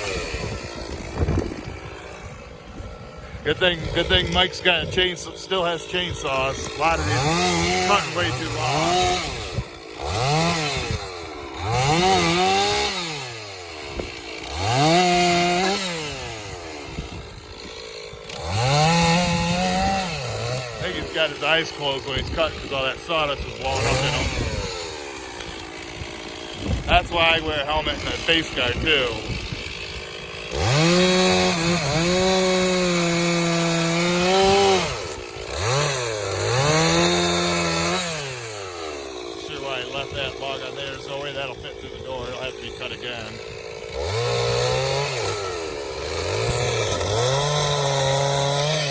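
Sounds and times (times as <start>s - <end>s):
chainsaw revving: 0.0s - 48.9s.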